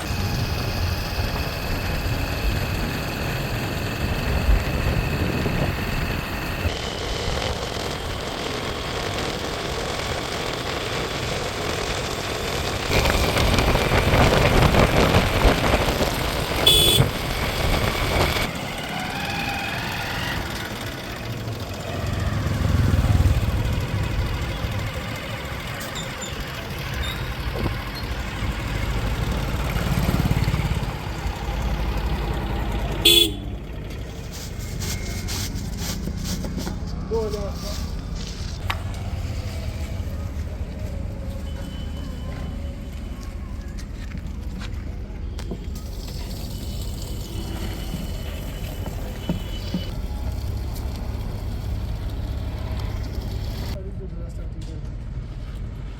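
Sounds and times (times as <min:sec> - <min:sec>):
diesel engines running: 0:00.0 - 0:55.9
horn toots: 0:15.0 - 0:27.9, 0:30.0 - 0:36.0.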